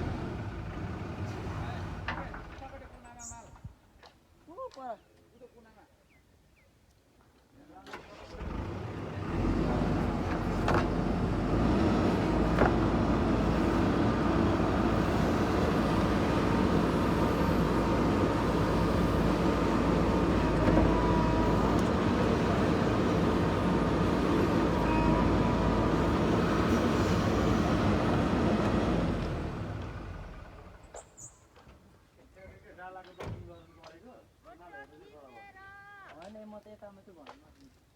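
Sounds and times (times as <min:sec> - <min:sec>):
diesel engine running: 0:00.0 - 0:02.7, 0:08.0 - 0:31.0.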